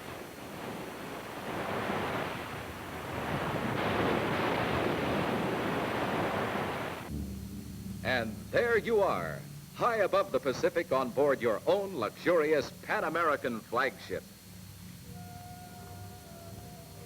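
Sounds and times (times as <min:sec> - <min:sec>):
ocean surf washing: 0:00.0 - 0:07.1, 0:08.0 - 0:14.4.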